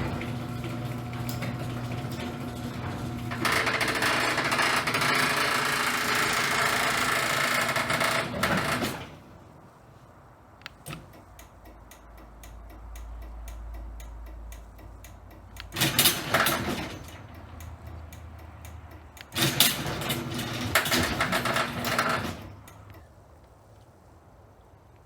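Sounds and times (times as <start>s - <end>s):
garage door opener motor humming: 0.0s - 9.5s, 15.6s - 23.0s
loud mechanical clattering: 15.6s - 23.0s.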